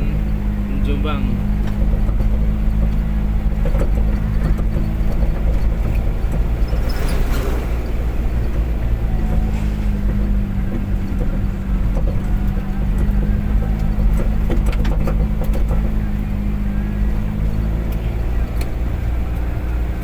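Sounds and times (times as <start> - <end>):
car engine drone: 0.0 - 20.0
road noise: 0.0 - 20.0.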